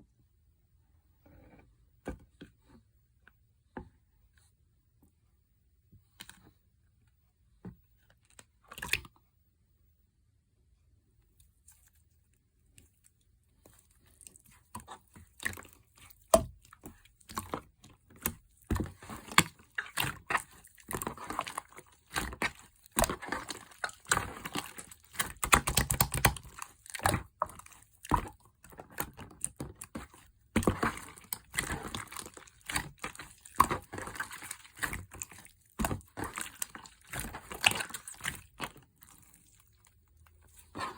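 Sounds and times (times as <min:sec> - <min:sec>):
crinkling tapping and scraping: 0:11.6 - 0:40.9.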